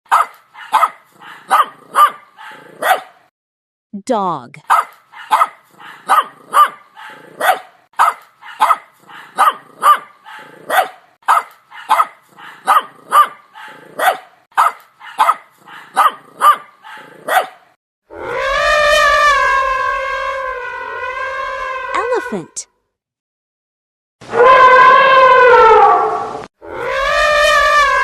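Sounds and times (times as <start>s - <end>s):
dog barking: 0.1s - 3.3s, 4.6s - 17.8s.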